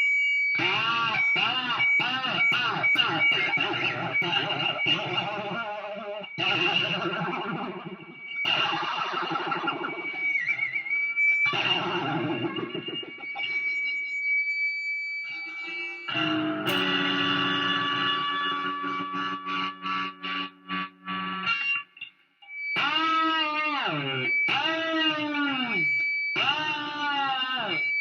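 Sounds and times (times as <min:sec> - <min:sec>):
distorted electric guitar: 0:00.0 - 0:28.0
guitar feedback whine: 0:00.0 - 0:28.0.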